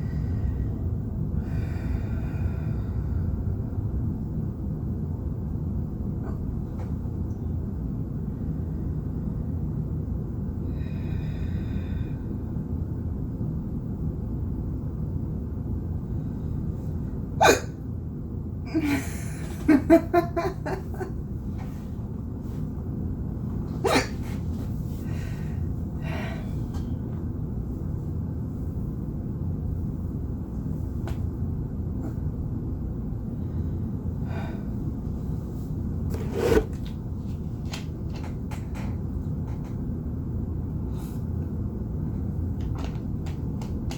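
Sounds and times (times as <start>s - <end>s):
steady low rumble: 0.0s - 43.9s
person hiccuping: 17.4s - 17.8s, 23.8s - 24.2s.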